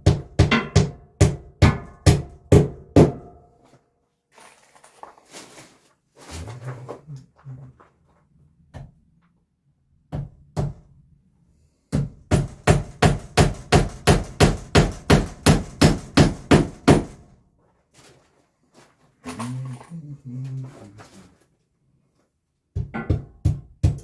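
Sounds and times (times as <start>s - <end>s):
hammer striking: 0.0s - 3.5s.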